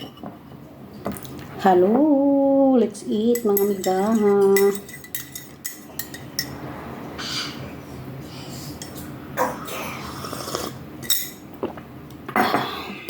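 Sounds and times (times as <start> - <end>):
utensils clinking against dishes: 3.1 - 6.6, 8.7 - 9.2, 11.0 - 11.5.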